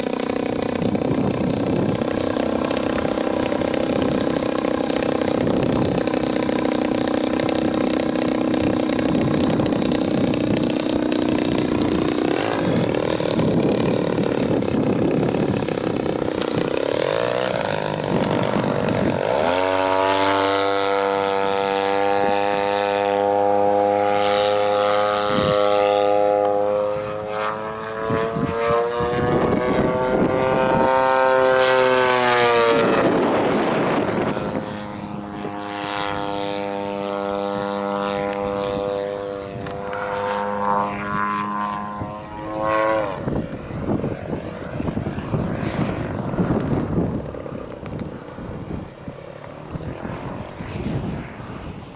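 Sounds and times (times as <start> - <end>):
model airplane engine and propeller: 0.0 - 51.9
wind noise: 0.0 - 51.9.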